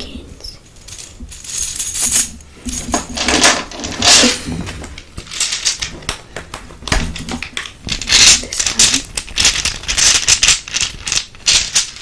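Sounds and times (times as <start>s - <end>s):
small pieces rattling in container: 5.2s - 5.9s, 7.2s - 12.0s.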